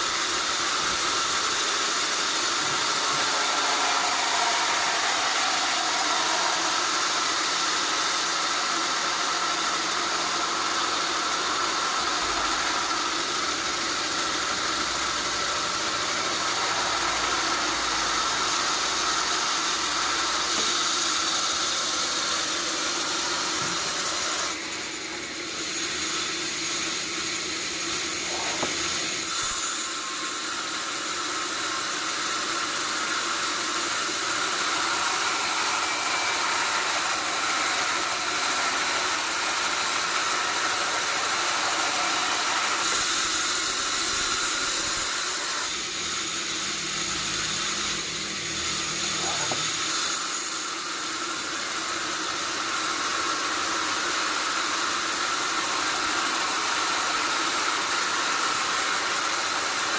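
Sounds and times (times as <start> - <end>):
band saw running: 0.0 - 59.9.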